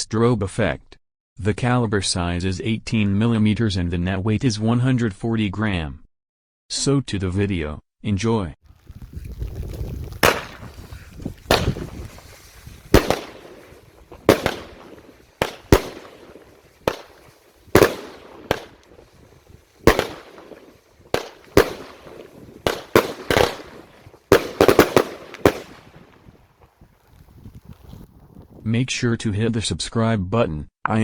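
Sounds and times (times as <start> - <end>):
firework launch thumps: 9.6 - 26.8
firework sharp bangs: 10.2 - 26.8.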